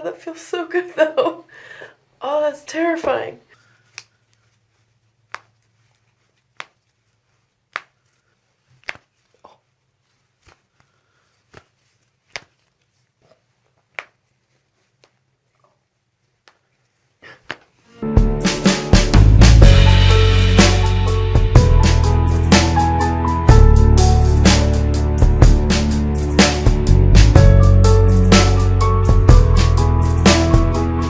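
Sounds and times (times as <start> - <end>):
music with drums: 18.1 - 31.0.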